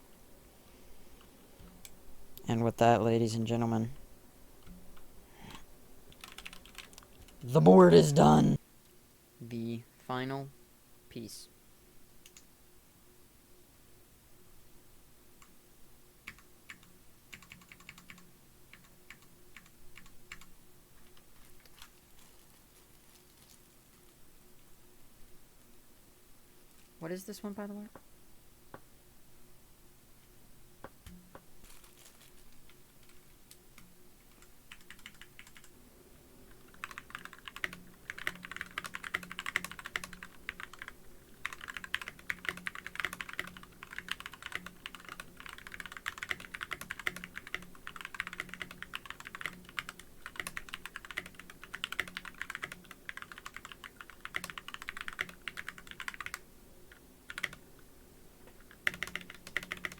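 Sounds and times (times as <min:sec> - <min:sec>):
mechanical keyboard typing: 0:06.2 - 0:07.0, 0:16.3 - 0:20.5, 0:34.4 - 0:35.7, 0:36.7 - 0:56.4, 0:57.3 - 0:57.6, 0:58.7 - 0:59.9.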